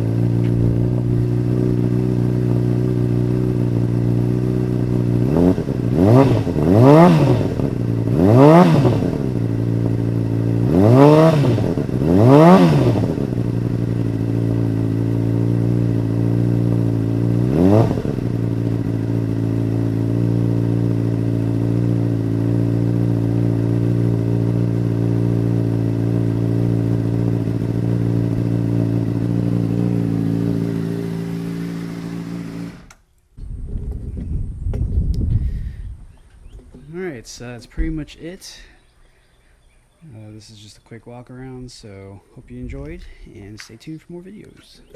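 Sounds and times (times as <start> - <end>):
motorcycle engine revving and idling: 0.0 - 38.7.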